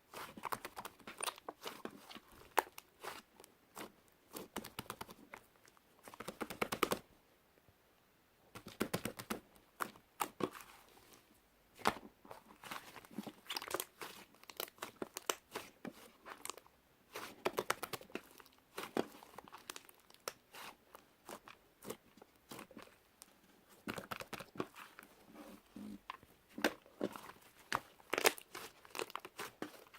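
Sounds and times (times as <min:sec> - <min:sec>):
slime crackling and tearing: 0:12.6 - 0:23.0, 0:27.1 - 0:29.9.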